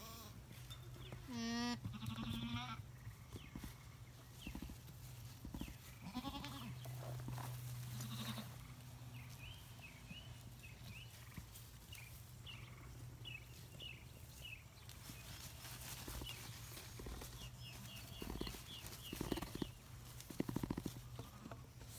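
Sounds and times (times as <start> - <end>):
goats bleating: 1.3 - 2.8, 6.0 - 6.8, 7.9 - 8.6.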